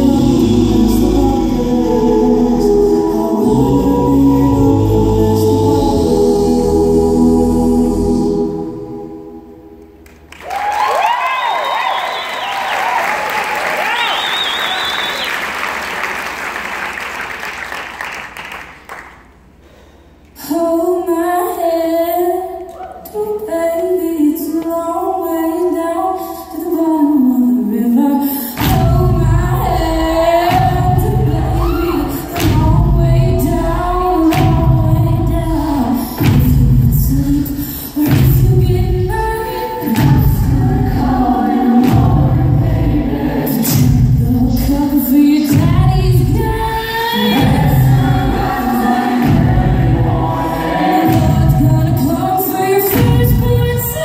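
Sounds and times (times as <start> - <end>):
vocal group singing a cappella: 0.0 - 10.0, 20.4 - 54.0
deep bass and beat: 28.6 - 43.1.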